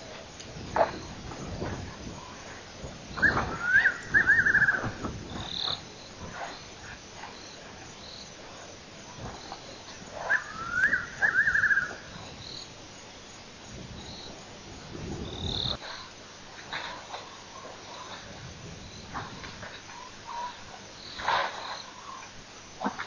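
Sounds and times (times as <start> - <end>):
faint night sounds: 0.0 - 23.0
wild animal calling: 3.2 - 6.7, 10.1 - 12.3, 19.1 - 22.3.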